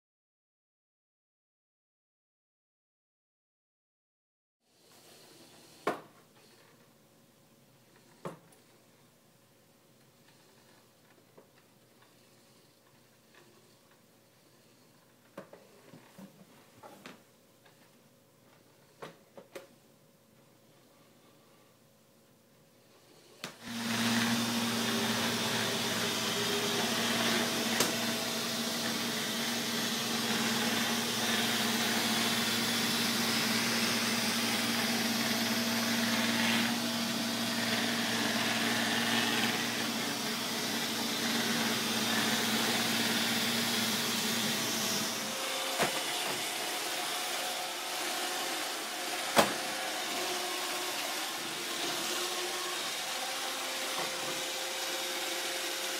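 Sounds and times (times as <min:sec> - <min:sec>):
vacuum motor hum: 0:23.4 - 0:55.9.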